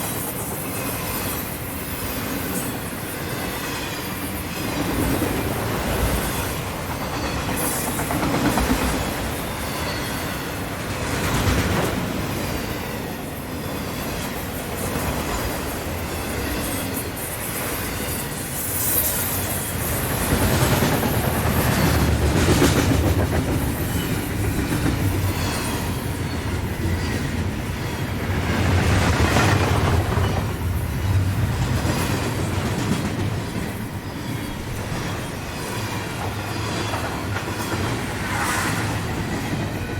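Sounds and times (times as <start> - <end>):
train wheels clattering on rails: 0.0 - 39.9
high wheel squeals: 13.6 - 20.8.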